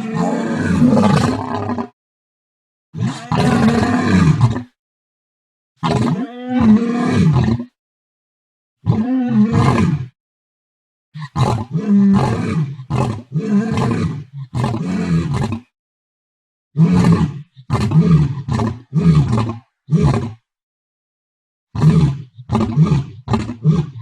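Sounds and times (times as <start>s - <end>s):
lion roaring: 0.0s - 2.0s, 3.0s - 4.7s, 5.8s - 7.7s, 8.8s - 10.1s, 11.2s - 15.7s.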